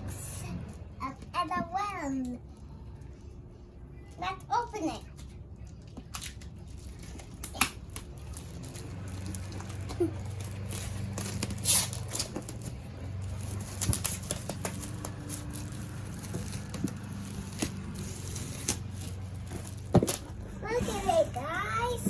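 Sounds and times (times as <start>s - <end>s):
cardboard packaging clicks and rustles: 5.8s - 21.2s.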